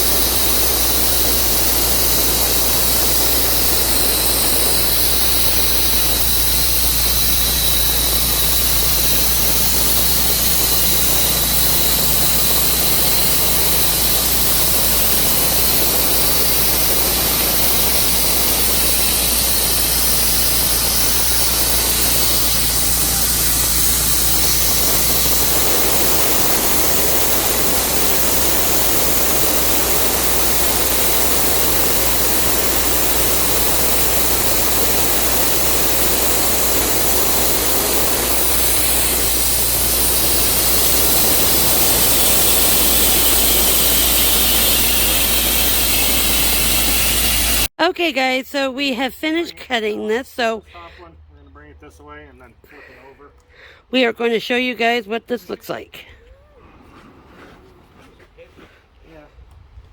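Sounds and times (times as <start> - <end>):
engine hum: 0.0 - 47.7
sawmill blade sawing log: 0.0 - 47.7.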